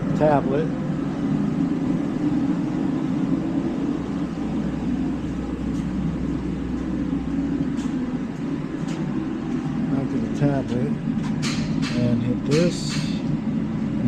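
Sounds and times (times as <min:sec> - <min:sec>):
diesel truck engine idling: 0:00.0 - 0:14.0.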